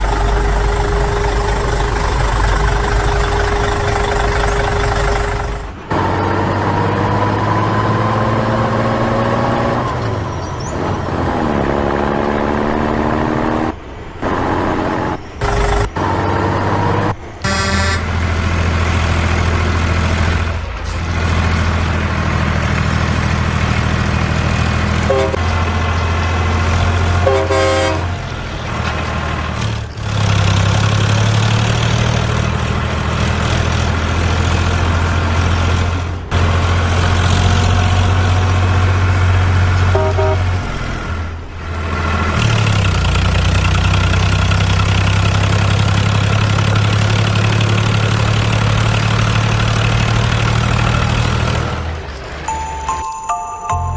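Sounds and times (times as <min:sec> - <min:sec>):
truck engine running: 0:00.0 - 0:53.9
truck horn toots: 0:17.4 - 0:18.6, 0:24.8 - 0:25.7, 0:26.6 - 0:28.3, 0:39.8 - 0:41.1.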